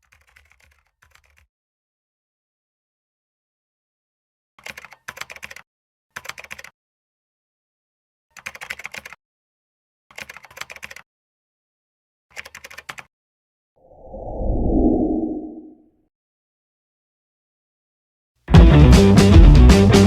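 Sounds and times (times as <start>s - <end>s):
low whoosh: 13.9s - 15.7s.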